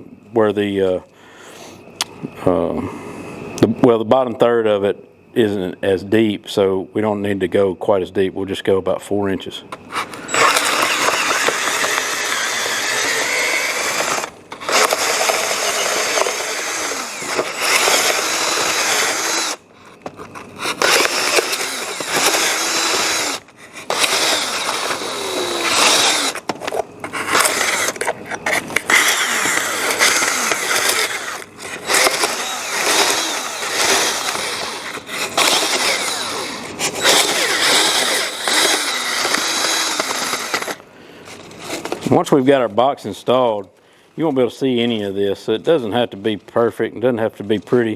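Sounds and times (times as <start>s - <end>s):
electric drill boring into foam: 10.2s - 19.6s, 20.4s - 26.5s, 27.2s - 40.8s.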